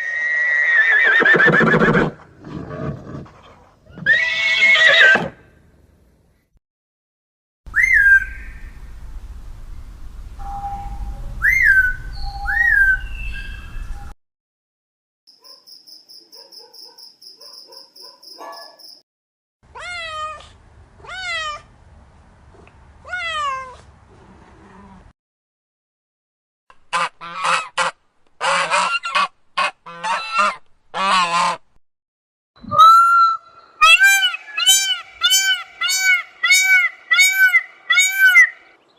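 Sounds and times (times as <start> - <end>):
low rumbling background: 8.3 - 13.1
waterfowl honking: 26.9 - 31.6, 33.8 - 38.7.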